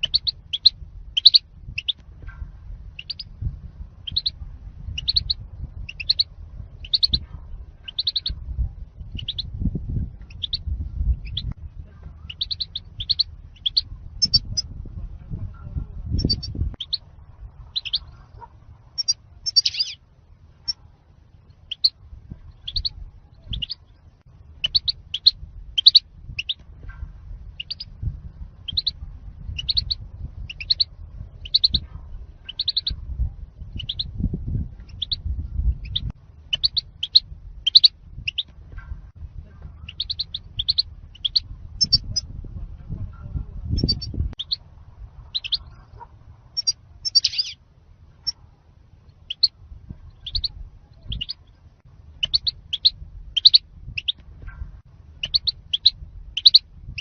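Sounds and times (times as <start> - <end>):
goldfinch chirping calls: 0.0 - 2.0, 3.0 - 3.3, 4.0 - 4.4, 5.0 - 7.2, 7.8 - 8.4, 9.1 - 9.5, 10.3 - 10.6, 12.3 - 14.6, 16.2 - 17.0, 17.7 - 18.2, 19.0 - 20.0, 21.7 - 22.0, 22.6 - 23.9, 24.6 - 26.6, 27.6 - 27.9, 28.7 - 29.0, 29.6 - 31.8, 32.5 - 33.0, 33.7 - 34.1, 34.9 - 35.2, 35.8 - 38.5, 39.8 - 42.2, 43.8 - 44.6, 45.3 - 45.8, 46.6 - 47.6, 49.3 - 49.5, 50.1 - 51.5, 52.2 - 54.2, 55.2 - 57.0
low rumble: 0.0 - 57.0.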